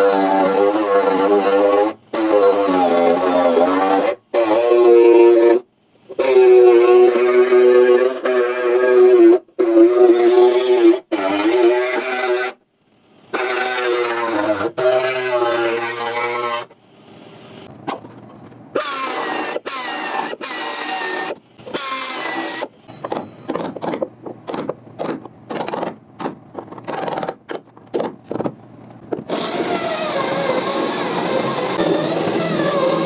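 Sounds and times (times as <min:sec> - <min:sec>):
power tool cutting sheet metal: 0:00.0 - 0:12.6, 0:13.3 - 0:16.8, 0:18.8 - 0:22.7, 0:29.3 - 0:33.0.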